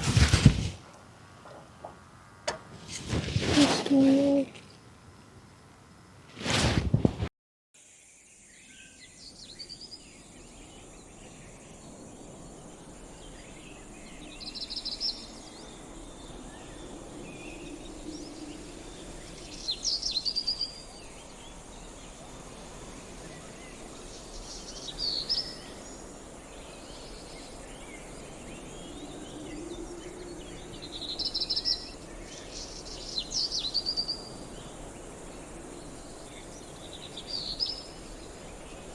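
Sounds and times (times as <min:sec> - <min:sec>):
insects hissing: 0:02.5 - 0:06.9.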